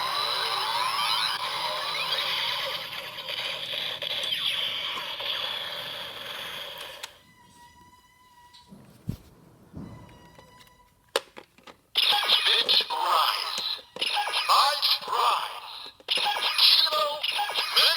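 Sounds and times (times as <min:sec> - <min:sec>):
toy electronic sound effects: 0:00.0 - 0:07.1, 0:12.0 - 0:17.9.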